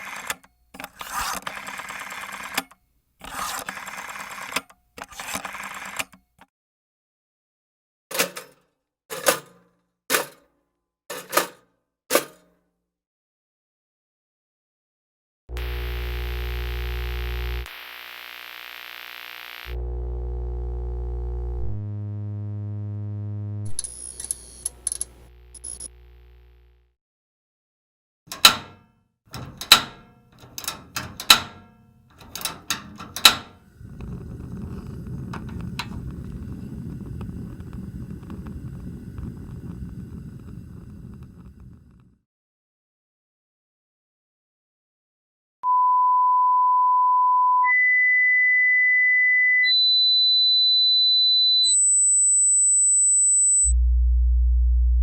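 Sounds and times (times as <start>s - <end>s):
low synthetic tone: 19.7s - 26.8s, 53.6s - 55.0s
steady rumbling noise: 33.6s - 42.1s.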